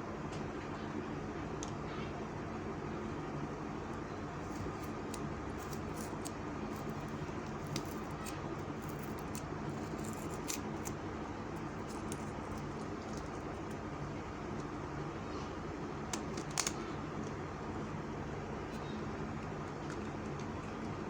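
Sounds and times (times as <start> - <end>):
low even hum: 0.0 - 21.0
plastic capsule clicking and crinkling: 4.5 - 11.0.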